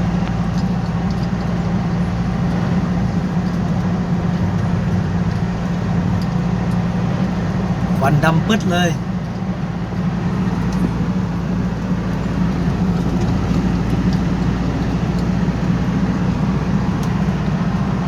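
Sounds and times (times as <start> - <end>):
road noise: 0.0 - 18.0
vehicle engine droning: 0.0 - 18.0.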